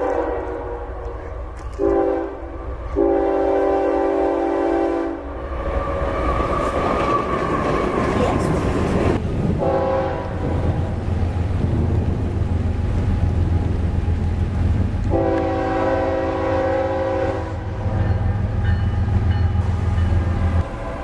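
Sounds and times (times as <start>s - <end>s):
locomotive air horn blast: 0.0s - 1.0s, 1.7s - 5.3s, 9.6s - 10.6s, 15.1s - 18.3s
train rumbling: 0.0s - 21.0s.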